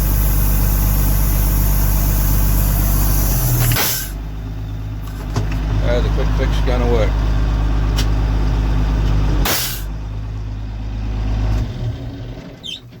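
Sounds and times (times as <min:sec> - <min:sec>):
compressed air venting hiss: 0:00.0 - 0:04.2
tractor diesel engine running: 0:00.0 - 0:13.0.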